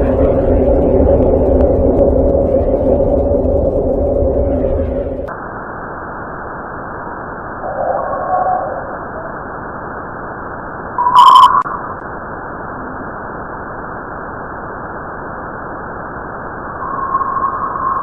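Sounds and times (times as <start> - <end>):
steady tone: 0.0 - 12.6, 16.0 - 18.0
muffled static hiss: 0.0 - 18.0
brief loud tone: 11.0 - 11.9.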